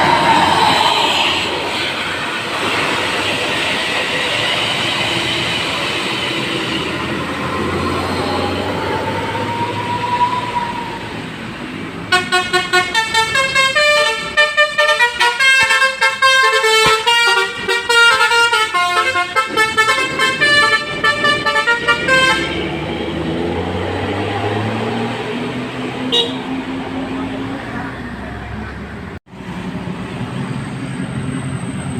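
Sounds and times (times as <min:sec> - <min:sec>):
traffic and engine noise: 0:00.0 - 0:31.9
multi-tone air horn tune: 0:12.1 - 0:22.8, 0:26.1 - 0:26.6.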